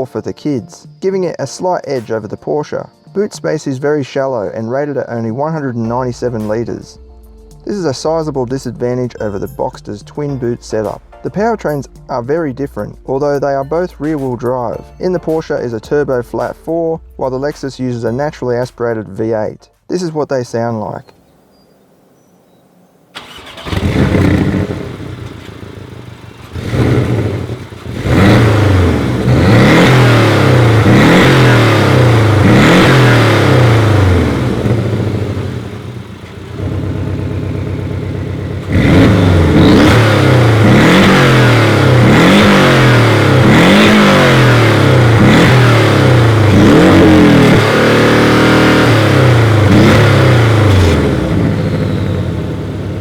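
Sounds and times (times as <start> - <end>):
car engine idling: 23.1 - 53.0
sports car engine revving: 23.2 - 53.0.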